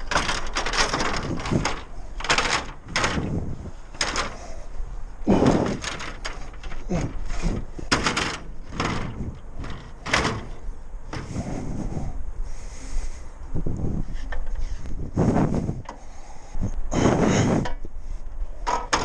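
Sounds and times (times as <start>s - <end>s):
ladder knocking and clattering: 0.0s - 4.4s, 5.3s - 11.4s, 18.7s - 19.0s.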